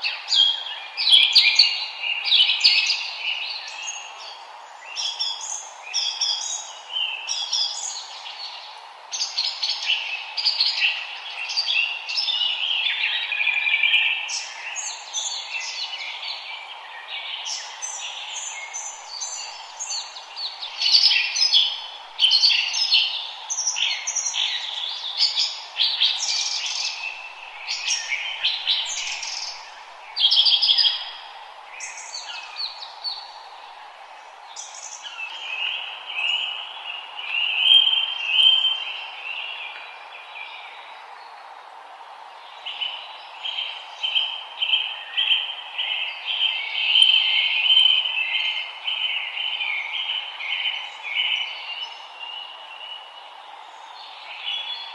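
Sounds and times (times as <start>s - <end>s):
faint steady hiss: 0.0s - 54.9s
songbirds singing: 0.0s - 54.9s.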